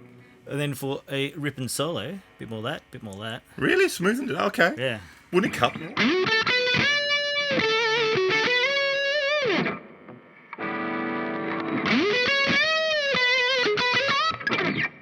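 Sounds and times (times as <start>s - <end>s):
distorted electric guitar lead: 5.5s - 15.0s.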